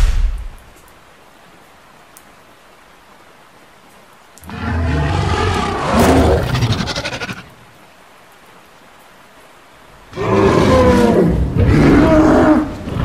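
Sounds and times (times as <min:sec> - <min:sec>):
rain hiss: 0:00.0 - 0:13.0
dinosaur roars: 0:04.4 - 0:07.6, 0:10.1 - 0:13.0.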